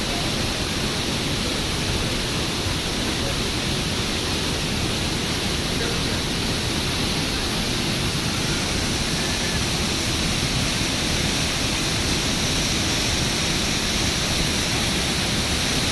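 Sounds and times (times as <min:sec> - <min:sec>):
waterfall: 0:00.0 - 0:15.9.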